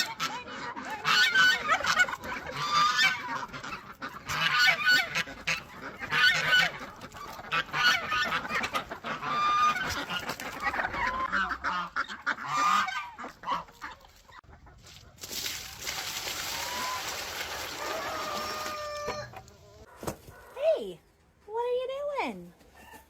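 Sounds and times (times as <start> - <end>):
geese honking: 0.0 - 14.8, 16.6 - 19.9.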